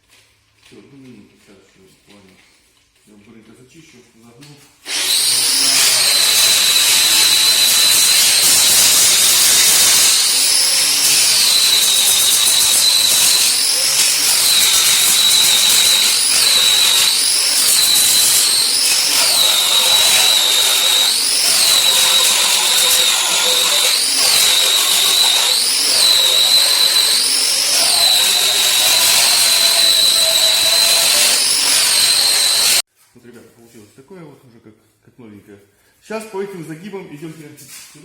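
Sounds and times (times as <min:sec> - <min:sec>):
angle grinder grinding steel: 0:04.9 - 0:32.8.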